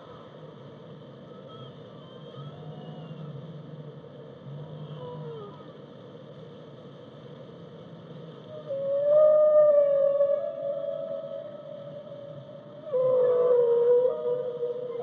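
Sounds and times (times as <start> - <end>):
whale calls: 8.5 - 15.0.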